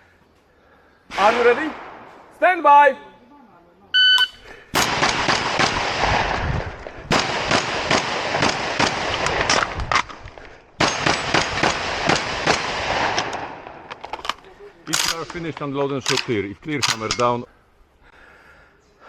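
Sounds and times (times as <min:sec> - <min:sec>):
shotgun shots: 0:04.8 - 0:09.8, 0:10.8 - 0:13.9.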